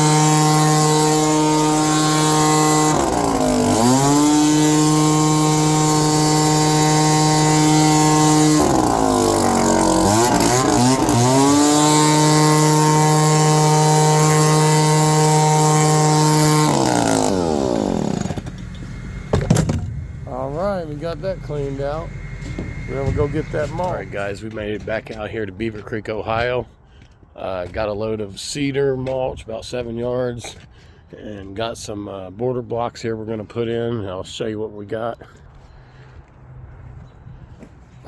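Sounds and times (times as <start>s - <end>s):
leaf blower engine running: 0.0s - 24.4s.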